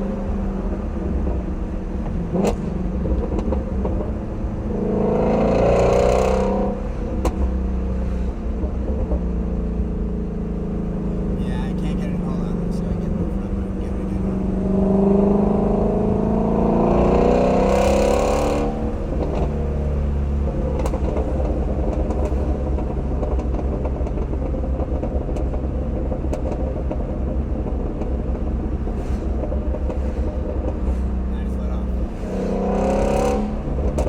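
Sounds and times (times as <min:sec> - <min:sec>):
car engine accelerating: 0:00.0 - 0:34.0
exhaust pops: 0:11.1 - 0:34.0.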